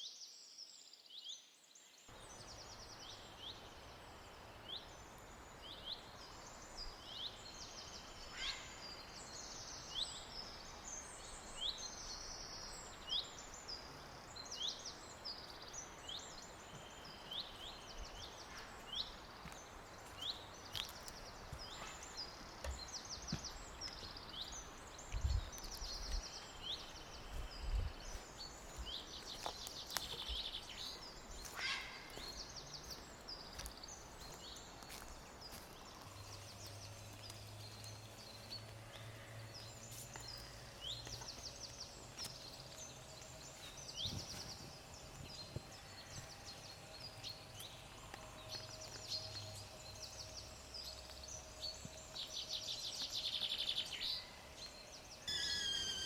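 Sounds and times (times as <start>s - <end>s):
small birds singing: 0.0s - 56.0s.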